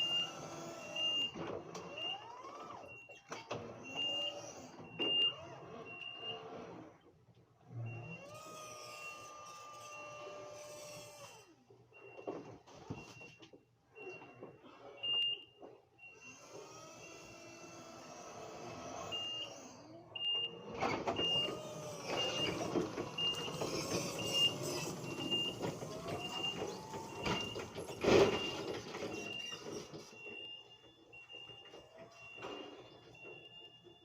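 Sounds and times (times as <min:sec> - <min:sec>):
reversing alarm beeping: 0:00.0 - 0:06.8, 0:07.8 - 0:11.4, 0:12.0 - 0:34.0
machinery squeals: 0:00.0 - 0:06.9, 0:07.9 - 0:12.3, 0:16.1 - 0:34.0
heavy machinery running: 0:20.7 - 0:30.4.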